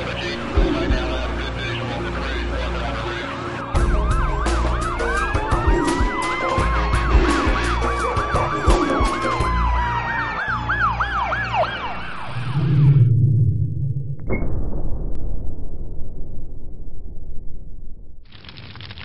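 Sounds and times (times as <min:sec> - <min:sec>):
siren wailing: 0:03.7 - 0:14.2
siren yelping: 0:03.8 - 0:13.1
low rumble: 0:12.0 - 0:18.3.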